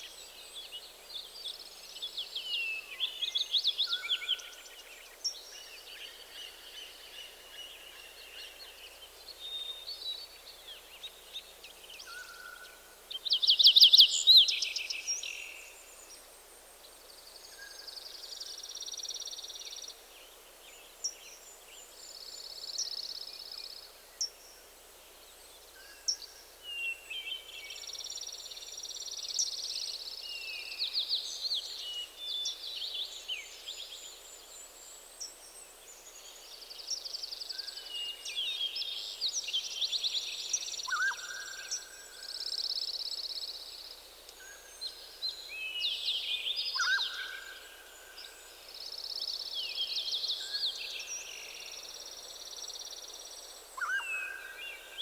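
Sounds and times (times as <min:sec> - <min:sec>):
songbirds singing: 0:25.1 - 0:55.0.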